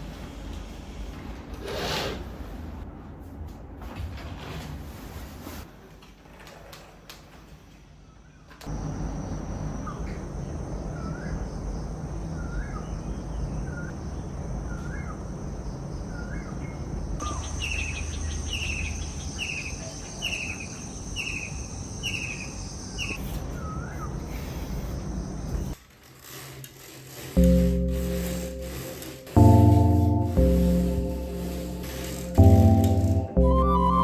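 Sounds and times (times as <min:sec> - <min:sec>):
birds calling: 0:10.8 - 0:25.8.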